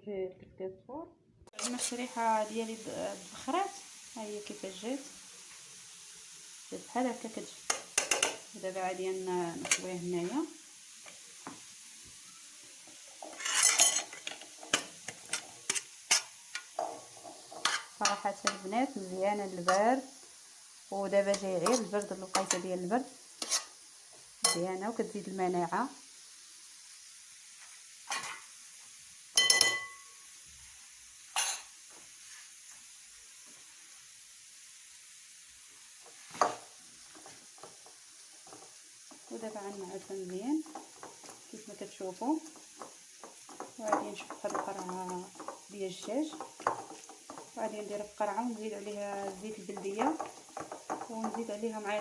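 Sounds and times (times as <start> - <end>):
cutlery clinking against dish: 7.7 - 8.4, 13.2 - 17.9, 29.4 - 30.1.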